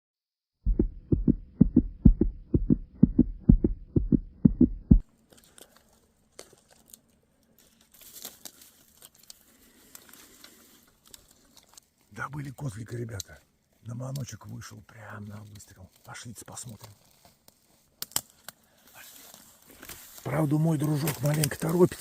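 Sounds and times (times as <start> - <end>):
deep heartbeat thumps: 0.6 - 5.0.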